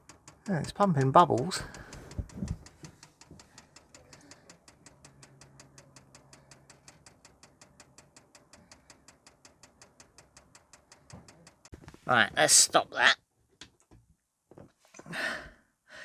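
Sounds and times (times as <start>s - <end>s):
fuel pump ticking faintly: 0.0s - 11.8s.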